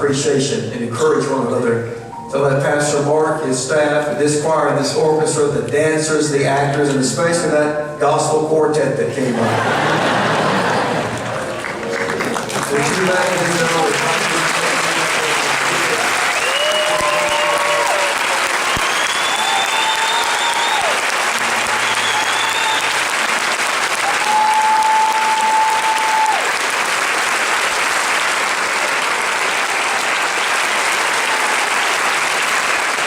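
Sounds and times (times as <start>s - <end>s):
crowd applauding: 9.3s - 33.0s
long whistles: 16.3s - 17.6s, 18.5s - 21.0s, 21.7s - 23.0s.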